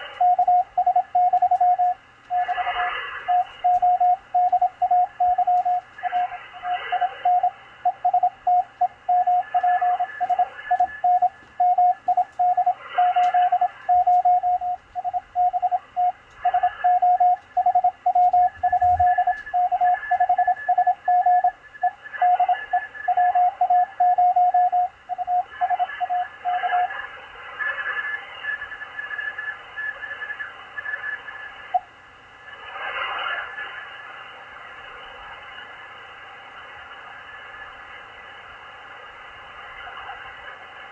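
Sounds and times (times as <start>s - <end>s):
morse code tone: 0.0s - 26.9s
faint high-pitched morse signal: 0.0s - 27.0s
radio band hiss: 0.0s - 40.9s.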